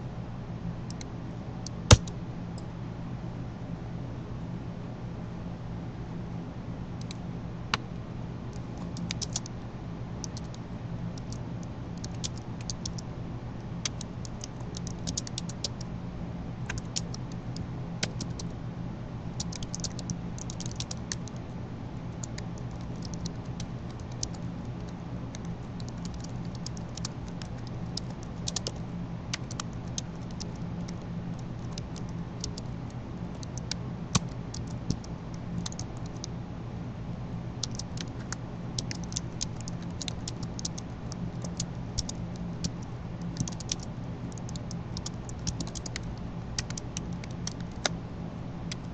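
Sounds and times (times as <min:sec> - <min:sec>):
steady low hum: 0:00.0 - 0:48.9
keyboard and mouse clicking: 0:01.9 - 0:02.1, 0:08.5 - 0:09.5, 0:10.2 - 0:10.6, 0:12.0 - 0:13.0, 0:13.8 - 0:15.8, 0:16.7 - 0:18.5, 0:19.4 - 0:21.4, 0:22.2 - 0:32.7, 0:33.4 - 0:36.3, 0:37.6 - 0:48.0.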